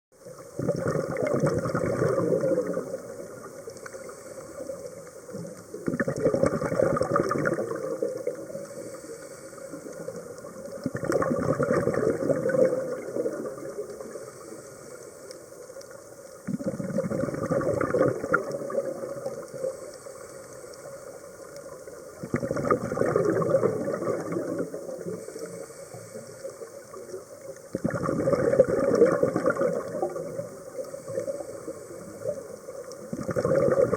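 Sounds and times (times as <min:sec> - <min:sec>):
exhaled bubbles underwater: 0:00.2 - 0:14.6, 0:15.6 - 0:33.9
breathing through a regulator: 0:01.3 - 0:05.2, 0:06.7 - 0:10.5, 0:12.7 - 0:15.6, 0:18.8 - 0:21.4, 0:23.3 - 0:27.0, 0:29.6 - 0:33.9.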